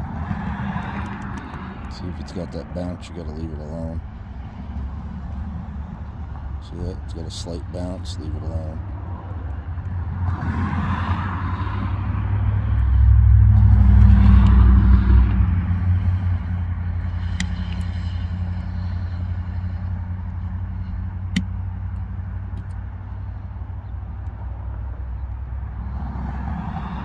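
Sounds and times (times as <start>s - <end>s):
vehicle engine humming: 0.0s - 27.0s
sharp clicks: 17.1s - 18.7s, 21.3s - 22.9s.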